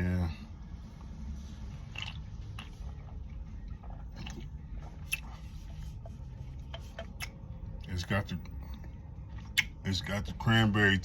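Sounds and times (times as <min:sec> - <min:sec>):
low steady hum: 0:00.0 - 0:11.0
mouth clicks and lip smacks: 0:04.2 - 0:05.4, 0:07.0 - 0:07.5, 0:08.8 - 0:09.8.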